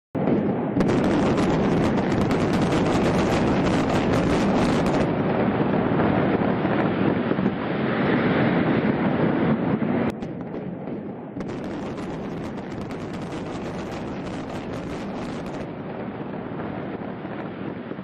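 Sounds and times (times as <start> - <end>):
wind buffeting microphone: 0.2 - 18.0
demolition charges crackling: 0.8 - 5.8
heavy rumble: 0.8 - 7.6, 10.1 - 16.7.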